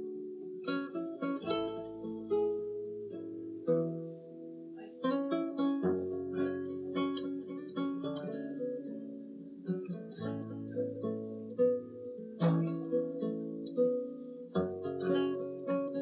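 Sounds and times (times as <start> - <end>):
acoustic guitar music: 0.0 - 16.0.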